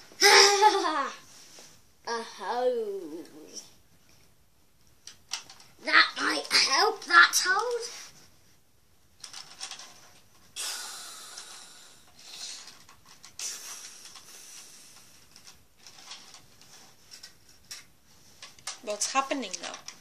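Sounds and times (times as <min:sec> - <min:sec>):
mouth hissing spray noises: 0:13.4 - 0:15.0.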